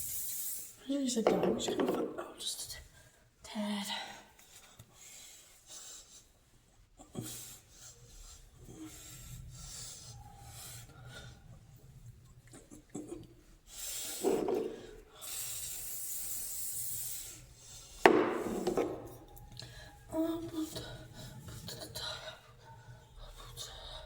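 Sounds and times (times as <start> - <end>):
steady hiss: 0.0 - 0.8.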